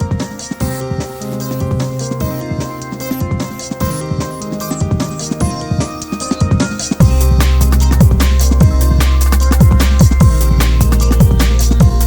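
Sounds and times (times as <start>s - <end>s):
electronic music with drums: 0.0s - 12.0s
heavy bass line: 7.0s - 12.0s.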